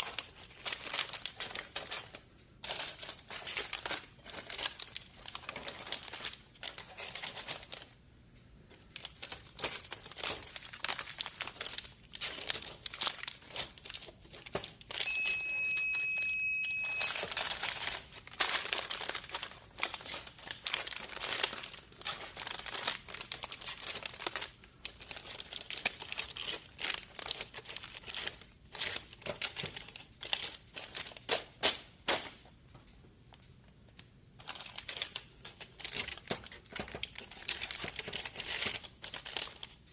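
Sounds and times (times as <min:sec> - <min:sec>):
plastic wrappers crinkling: 0:00.0 - 0:39.9
high electronic tone: 0:15.1 - 0:17.2.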